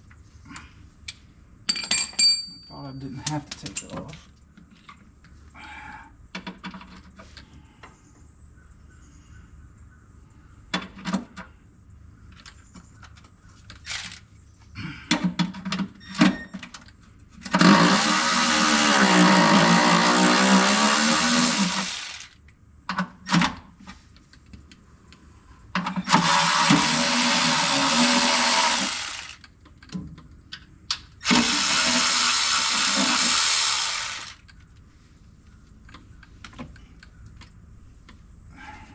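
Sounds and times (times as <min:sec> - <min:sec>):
metal clinks and knocks: 0:01.7 - 0:04.2
handheld power tool running: 0:17.5 - 0:22.3, 0:26.0 - 0:29.4, 0:31.2 - 0:34.4.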